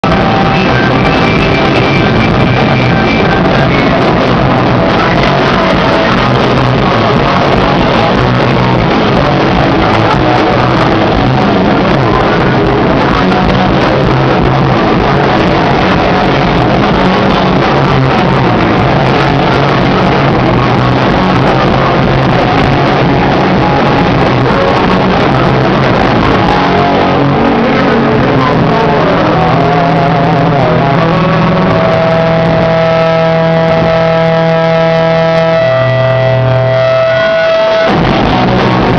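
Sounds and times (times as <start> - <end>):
distorted rock band playing: 0.0 - 38.9
ringing guitar note: 0.0 - 38.9.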